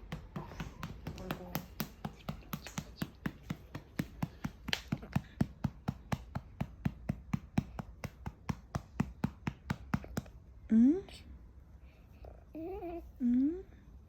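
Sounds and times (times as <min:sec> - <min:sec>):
hand patting baby's back: 0:00.0 - 0:10.3.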